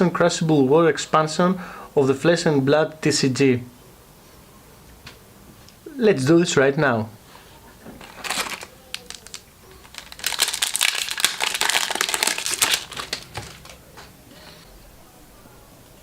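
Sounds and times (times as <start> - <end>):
foil wrapper crinkling: 7.9 - 14.0.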